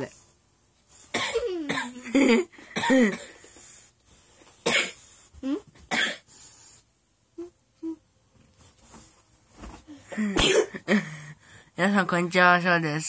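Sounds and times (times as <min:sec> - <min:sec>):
man coughing: 0:01.2 - 0:03.4, 0:04.7 - 0:05.0, 0:10.1 - 0:11.1.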